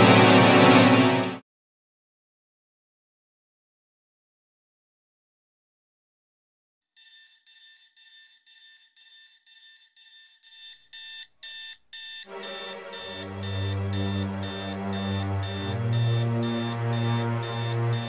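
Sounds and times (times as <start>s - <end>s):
alarm clock beeping: 7.0s - 18.0s
deep steady bass sound: 12.3s - 18.0s.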